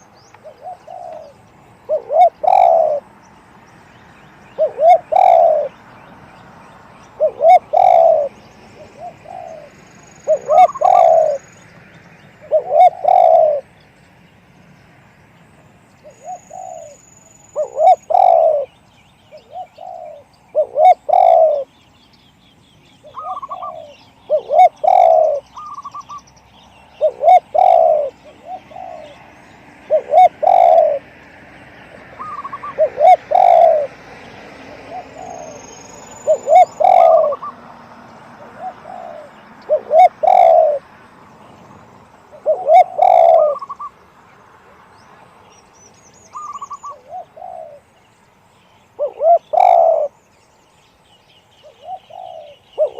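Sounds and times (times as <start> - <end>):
dove cooing: 0.0 - 3.1, 4.5 - 5.8, 7.2 - 11.5, 12.4 - 13.7, 16.0 - 17.0, 17.6 - 18.7, 19.3 - 21.7, 23.0 - 26.2, 27.0 - 29.2, 29.8 - 31.1, 32.0 - 34.0, 34.6 - 37.7, 38.4 - 40.9, 42.3 - 44.0, 46.3 - 47.9, 49.0 - 50.2, 51.6 - 52.9
high bird chirps: 45.6 - 47.1.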